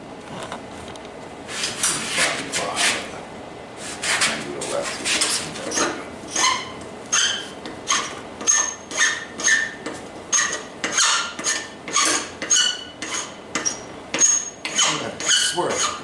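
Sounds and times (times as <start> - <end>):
file scraping steel: 3.8 - 16.0.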